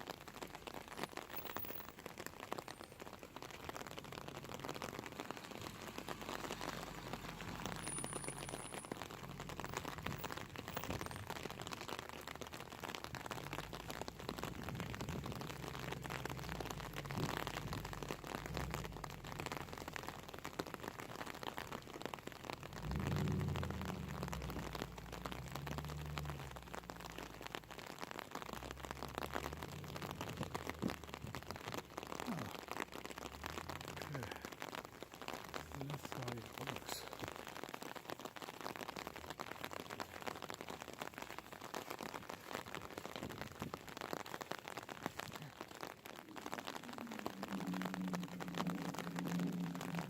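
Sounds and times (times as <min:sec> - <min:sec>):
rain patter: 0:00.0 - 0:50.0
low rumble: 0:03.4 - 0:21.6, 0:22.4 - 0:31.8, 0:46.2 - 0:50.0.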